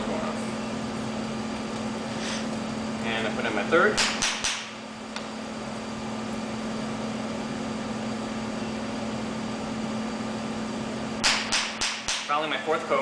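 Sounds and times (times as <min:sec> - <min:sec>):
mechanical hum: 0:00.0 - 0:13.0.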